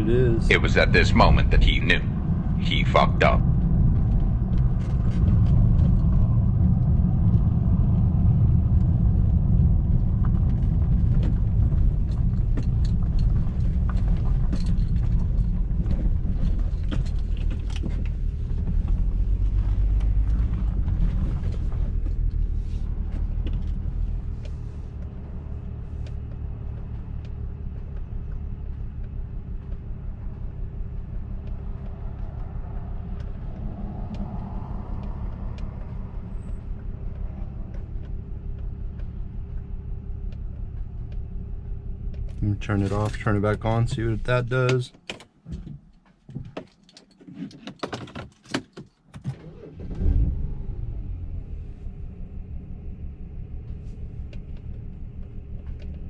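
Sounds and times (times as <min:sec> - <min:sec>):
road rumble: 0:00.0 - 0:47.2, 0:49.1 - 0:56.0
car engine misfiring: 0:49.2 - 0:56.0.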